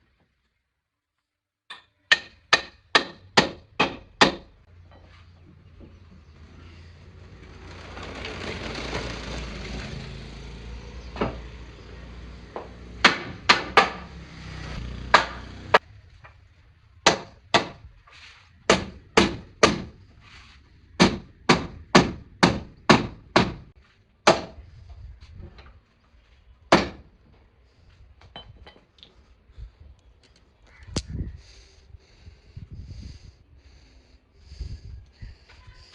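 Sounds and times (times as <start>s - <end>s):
tool striking wood: 1.7s - 4.5s, 12.5s - 14.2s, 15.1s - 15.5s, 17.0s - 17.8s, 18.7s - 20.0s, 21.0s - 24.6s, 26.7s - 27.1s
rough rushing noise: 6.4s - 10.8s.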